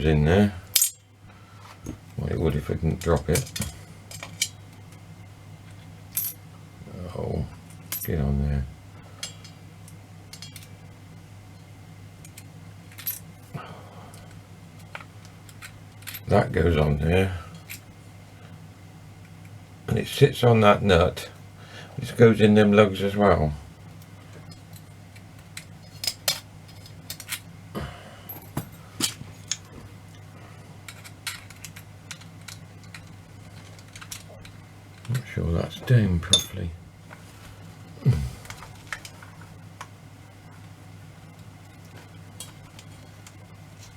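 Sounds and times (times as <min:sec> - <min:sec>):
steady low hum: 0:00.0 - 0:43.9
metal clock parts clinking: 0:00.8 - 0:01.0, 0:36.2 - 0:36.6
small metal parts clicking: 0:30.9 - 0:35.3.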